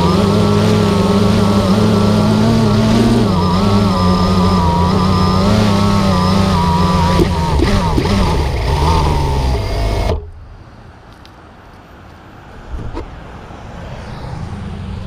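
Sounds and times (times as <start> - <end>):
engine revving: 0.0 - 10.3.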